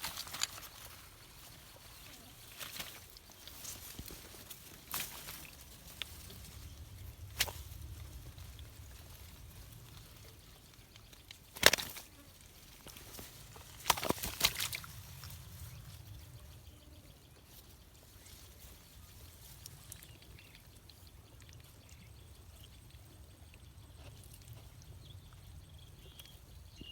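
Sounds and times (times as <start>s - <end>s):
low steady rumble: 4.3s - 11.4s
water splashing in a pond: 11.4s - 15.8s.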